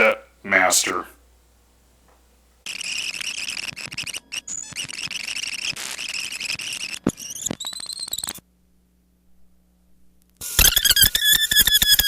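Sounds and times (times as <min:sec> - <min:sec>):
crackling clicks: 0:02.1 - 0:08.4.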